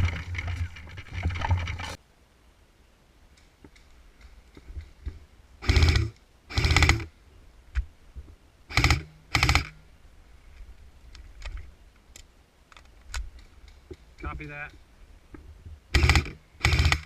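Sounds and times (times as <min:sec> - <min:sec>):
airsoft gun bursts: 0:05.6 - 0:07.1, 0:08.7 - 0:09.8, 0:15.9 - 0:17.0
faint small clicks: 0:10.6 - 0:15.4.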